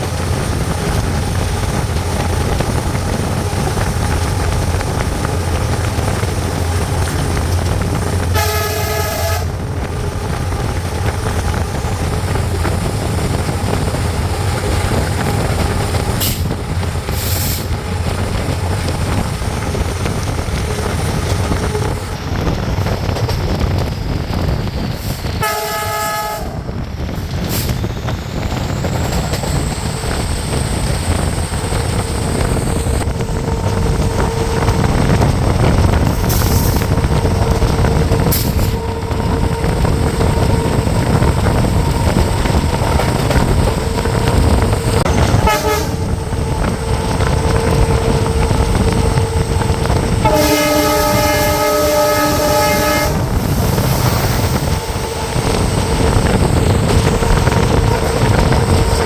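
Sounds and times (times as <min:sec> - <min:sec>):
locomotive hum: 0:00.0 - 0:59.0
train rumble: 0:00.0 - 0:59.0
train horn: 0:05.5 - 0:09.7, 0:20.6 - 0:22.1, 0:25.4 - 0:26.7, 0:45.1 - 0:56.4.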